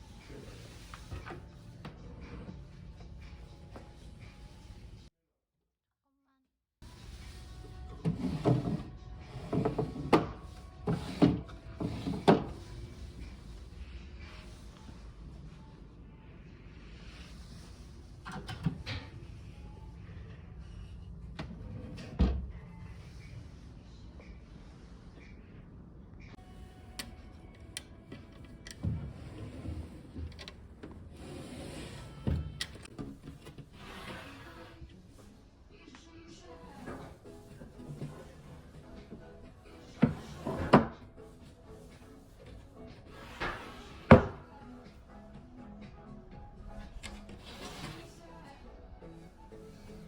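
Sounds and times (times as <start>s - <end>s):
wooden drawers sliding and rubbing: 7.9s - 13.0s, 28.9s - 34.8s, 36.7s - 44.4s, 47.2s - 48.2s
wooden drawers sliding shut: 40.0s - 41.1s, 43.2s - 44.4s.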